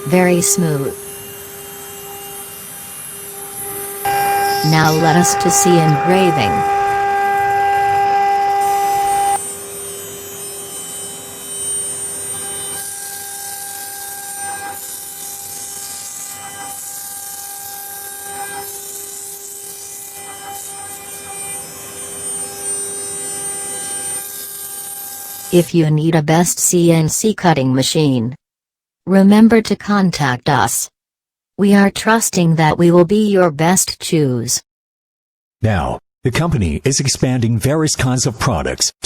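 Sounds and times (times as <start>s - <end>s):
router spindle whining: 0.0s - 25.5s.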